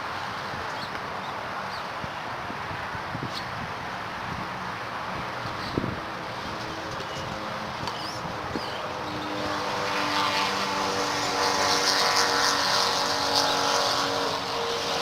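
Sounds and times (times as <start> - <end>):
engine passing close by: 3.6 - 15.0.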